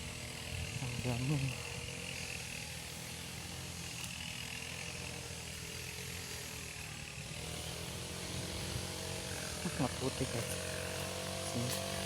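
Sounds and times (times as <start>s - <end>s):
distant brush cutter engine whining: 0.0s - 12.0s.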